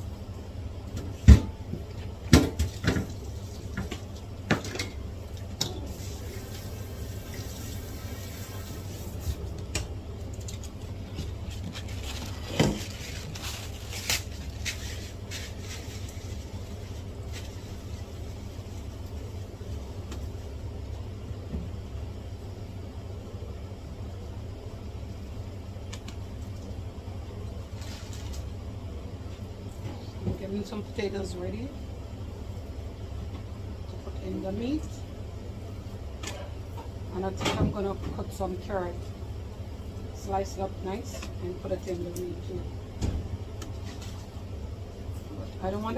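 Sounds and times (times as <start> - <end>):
steady low hum: 0.0 - 45.9
kitchen knocks and clatters: 1.1 - 3.2, 12.4 - 13.2.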